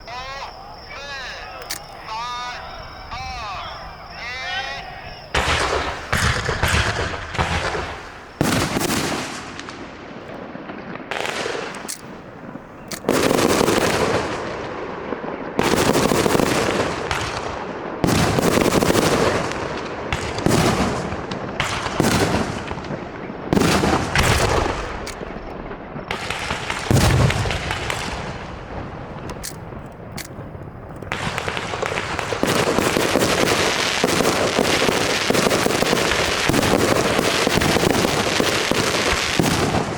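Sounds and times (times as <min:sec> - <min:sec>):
fireworks shells bursting: 0:00.0 - 0:14.8, 0:20.3 - 0:39.9
fireworks crackle: 0:04.0 - 0:39.9.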